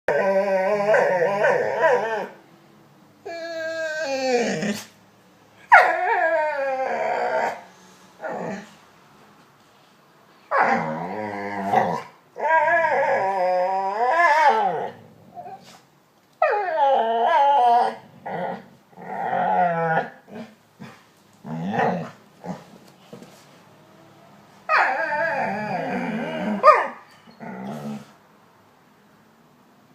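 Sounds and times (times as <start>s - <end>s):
dog whining and howling: 0.1s - 2.4s, 3.2s - 4.9s, 5.6s - 8.7s, 10.5s - 15.8s, 16.4s - 20.2s, 24.7s - 28.1s.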